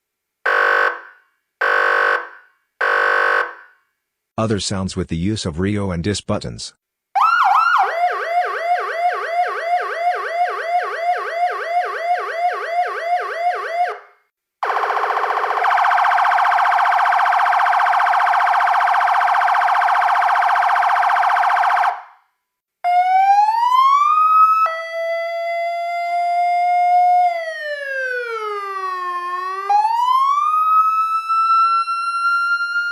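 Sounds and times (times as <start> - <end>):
steady buzzing siren blare: 0.4 - 3.7, 7.2 - 22.2, 22.8 - 32.9
electronic siren warble: 7.2 - 22.0
siren tone rising in pitch: 7.2 - 22.1, 22.8 - 32.9.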